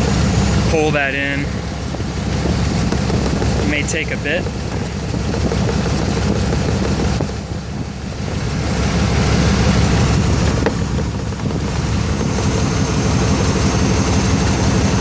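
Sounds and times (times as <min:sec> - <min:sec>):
engine idling hum: 0:00.0 - 0:15.0
refrigerant rushing noise: 0:00.0 - 0:15.0.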